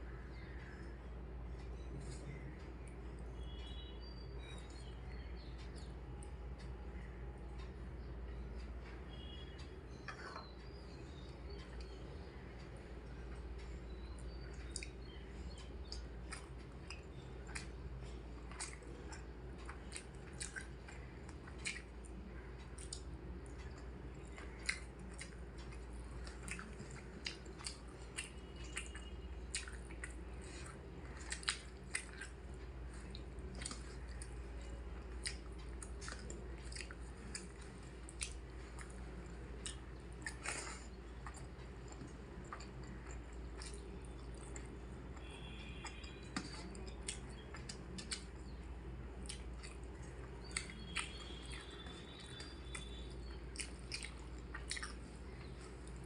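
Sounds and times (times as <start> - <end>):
steady low hum: 0.0 - 56.0
person chewing: 14.2 - 22.0, 22.6 - 48.6, 49.2 - 56.0.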